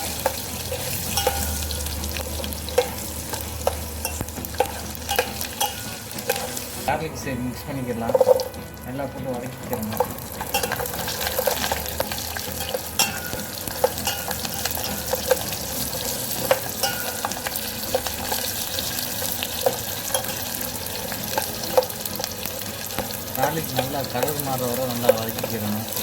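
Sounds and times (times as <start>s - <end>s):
spatula scraping and tapping pan: 0.0s - 6.9s, 9.7s - 22.0s
spices sizzling in hot oil: 0.0s - 26.0s.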